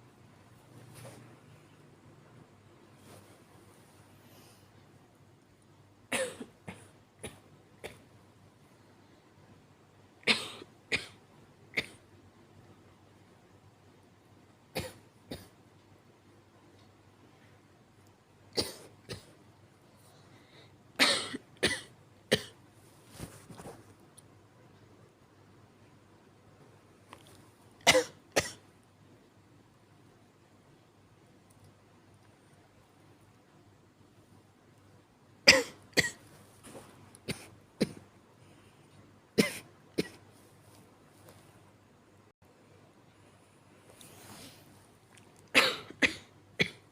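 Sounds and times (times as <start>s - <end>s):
person coughing weakly: 45.6s - 46.9s.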